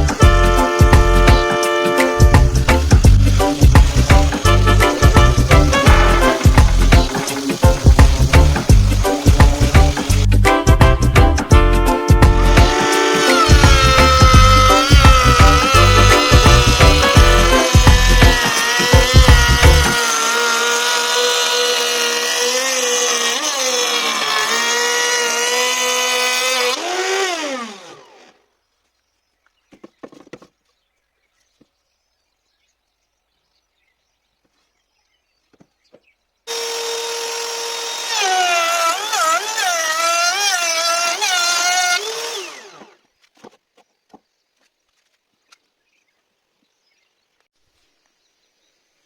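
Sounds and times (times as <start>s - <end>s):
power tool whine: 0.0s - 10.4s, 12.1s - 28.4s, 36.5s - 43.0s.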